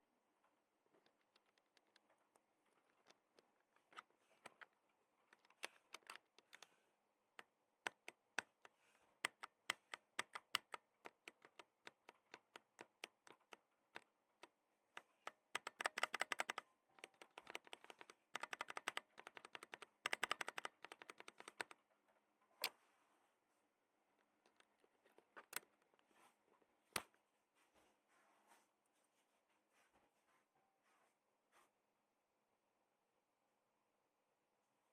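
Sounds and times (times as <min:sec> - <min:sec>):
mechanical keyboard keys clacking: 0:05.3 - 0:06.6, 0:07.8 - 0:14.0, 0:15.2 - 0:21.8.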